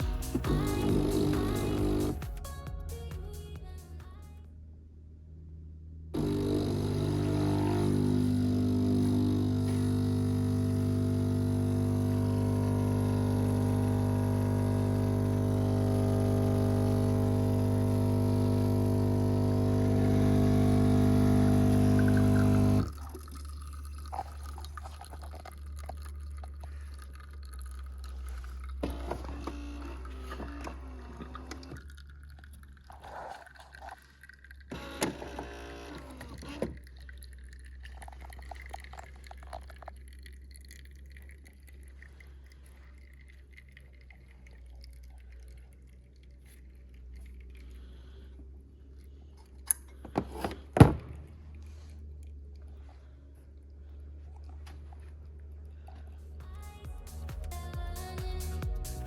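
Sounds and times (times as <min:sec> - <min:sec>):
coffee machine buzzing: 0:00.0 - 0:02.2, 0:06.2 - 0:24.6, 0:28.8 - 0:32.1, 0:34.2 - 0:36.9
coffee trickling and dripping: 0:00.8 - 0:02.1, 0:06.2 - 0:50.1.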